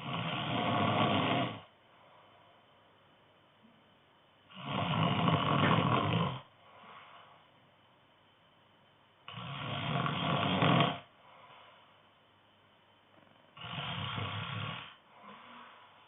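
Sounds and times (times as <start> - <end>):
man snoring: 0.0 - 1.7, 4.5 - 6.5, 9.3 - 11.1, 13.6 - 15.6
faint breath out: 15.1 - 16.0.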